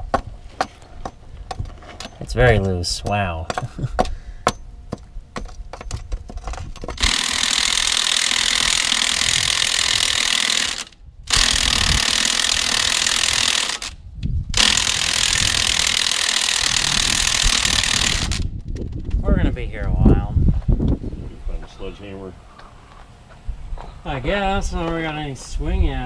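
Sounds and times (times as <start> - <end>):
pneumatic air tool running: 7.0 - 18.5.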